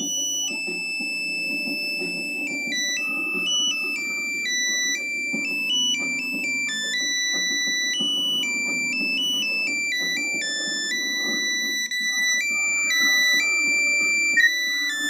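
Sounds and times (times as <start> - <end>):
mobile phone beeping ringtone: 0.0 - 15.0
muffled tv sound: 11.0 - 15.0.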